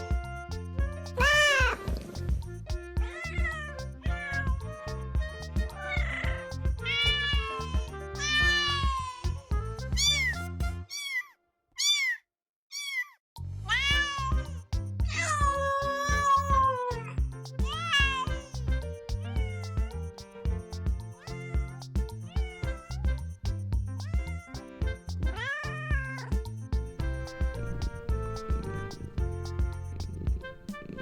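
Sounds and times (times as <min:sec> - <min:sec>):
background music: 0:00.0 - 0:10.9, 0:13.6 - 0:31.0
kittens meowing: 0:01.2 - 0:02.1, 0:03.0 - 0:14.5, 0:15.1 - 0:20.1, 0:21.2 - 0:23.2, 0:24.0 - 0:26.5.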